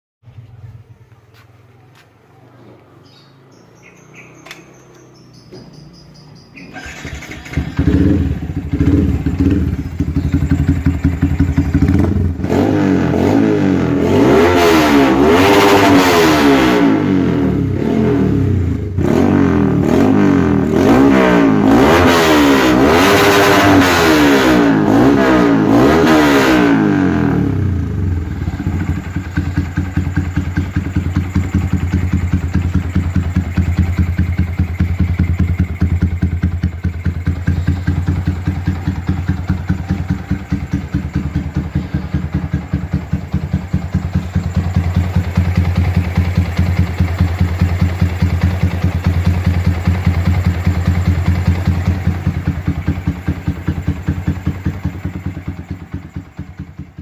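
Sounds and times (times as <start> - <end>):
motorcycle engine idling: 0.3 - 13.2, 26.9 - 57.0
motorcycle engine revving: 2.8 - 57.0.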